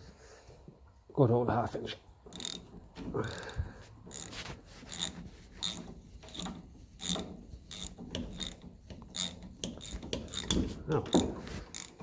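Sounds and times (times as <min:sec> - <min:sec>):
hand ratchet clicking: 0:02.3 - 0:04.3, 0:04.9 - 0:12.0.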